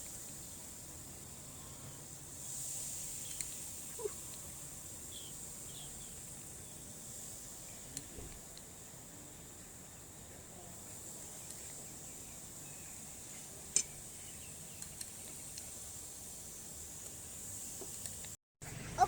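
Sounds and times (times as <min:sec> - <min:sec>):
small ticks: 0:03.2 - 0:04.5, 0:14.8 - 0:15.7.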